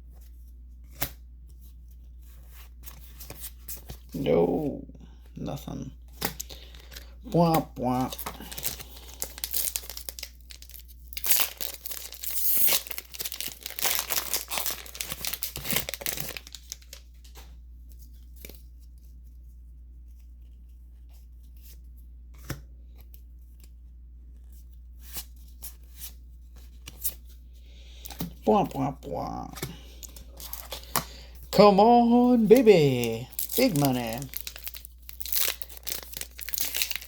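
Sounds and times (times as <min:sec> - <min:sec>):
foil wrapper tearing and crinkling: 0:07.8 - 0:17.4, 0:30.1 - 0:31.0, 0:31.7 - 0:37.0.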